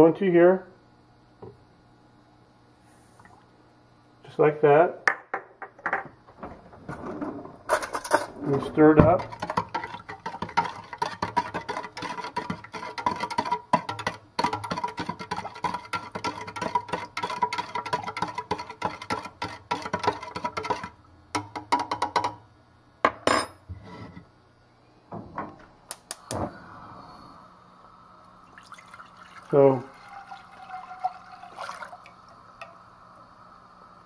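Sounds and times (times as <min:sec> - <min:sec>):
spoon stirring in a pot: 0:07.8 - 0:22.4.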